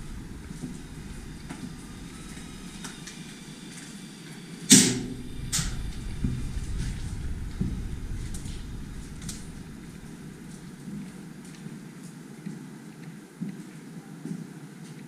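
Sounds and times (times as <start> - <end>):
low handling noise: 0.0 - 11.7
loud sharp bang: 4.7 - 11.6.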